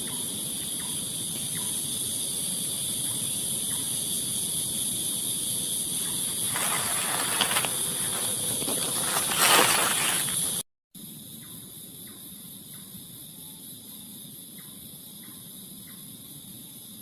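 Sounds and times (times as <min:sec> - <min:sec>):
broad hiss-like noise: 0:00.0 - 0:17.0
crickets trilling: 0:00.0 - 0:17.0.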